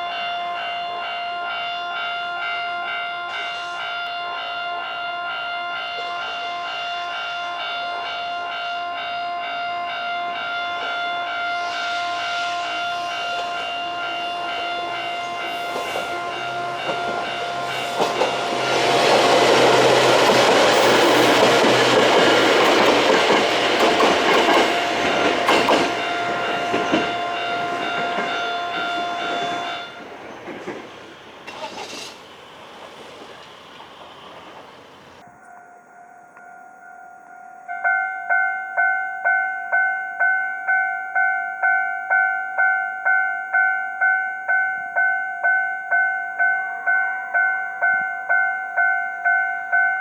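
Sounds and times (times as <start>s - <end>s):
level crossing warning bell: 0.0s - 50.0s
train wheels clattering on rails: 12.8s - 35.2s.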